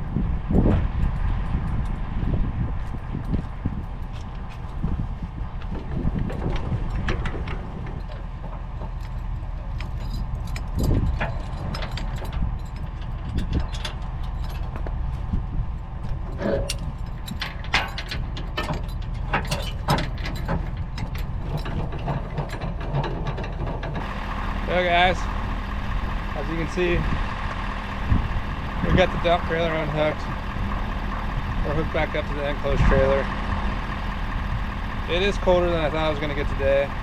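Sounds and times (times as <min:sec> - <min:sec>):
truck engine idling: 0:02.8 - 0:37.0
metallic clanks of chains: 0:09.0 - 0:14.8, 0:16.4 - 0:23.7.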